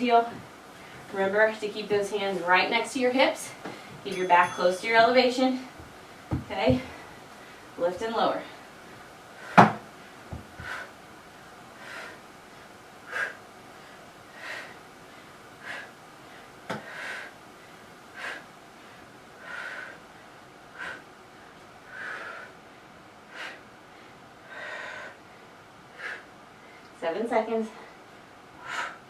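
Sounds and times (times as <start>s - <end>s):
woman breathing hard: 8.4s - 26.9s, 27.7s - 29.0s.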